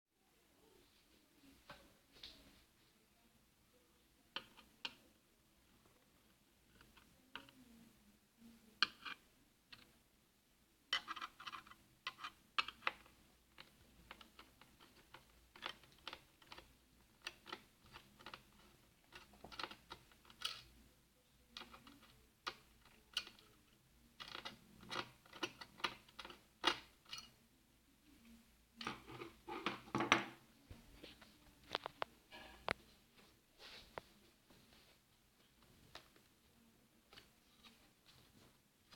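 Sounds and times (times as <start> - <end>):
plastic and metal parts clicking: 11.0 - 20.8, 21.6 - 27.3.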